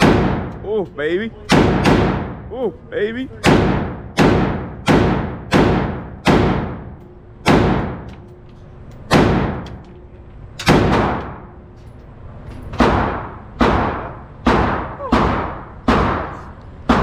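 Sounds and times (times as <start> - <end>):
rifle shots echoing: 0.0 - 0.6, 1.5 - 2.4, 3.4 - 8.1, 9.1 - 9.7.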